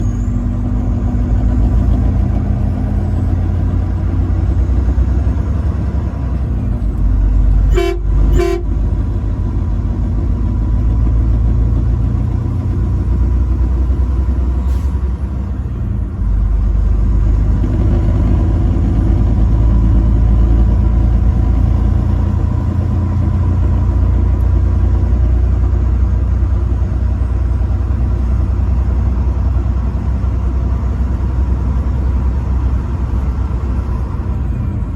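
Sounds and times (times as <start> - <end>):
truck driving rumble: 0.0 - 34.9
truck horn blasts: 7.5 - 9.0.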